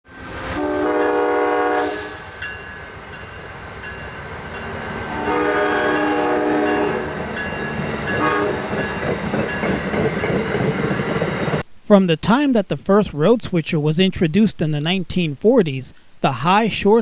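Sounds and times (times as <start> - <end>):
locomotive air horn blasts: 0.1 - 2.4, 5.1 - 7.2, 8.1 - 8.6
passing train rumble: 0.1 - 11.6.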